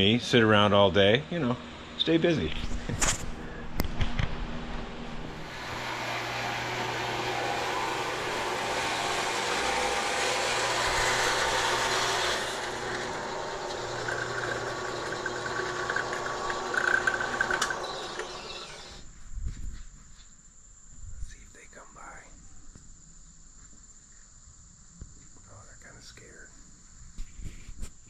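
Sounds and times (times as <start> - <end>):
steady hum: 0.0 - 19.2
power saw cutting: 5.2 - 19.0.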